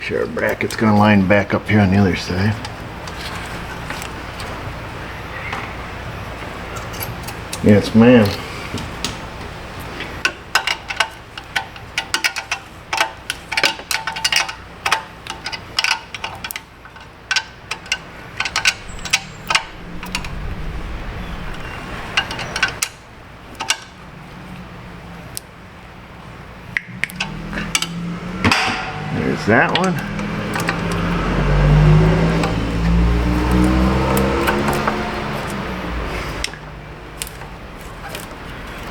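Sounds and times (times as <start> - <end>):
metal tools and bolts clinking: 10.6 - 20.4.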